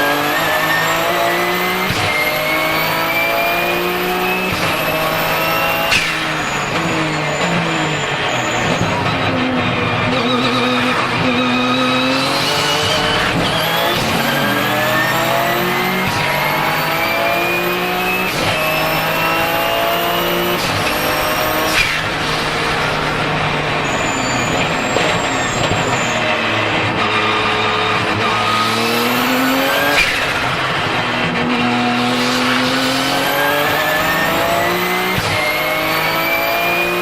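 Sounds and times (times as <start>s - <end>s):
car engine accelerating: 0.0s - 37.0s
sharp crack: 1.8s - 9.3s, 10.8s - 36.0s
turbo whistle: 10.1s - 26.4s.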